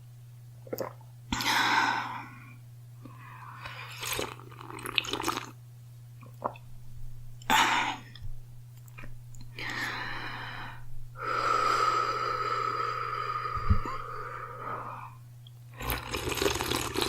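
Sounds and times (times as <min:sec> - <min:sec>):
breathing and throat noises: 0:09.5 - 0:15.2.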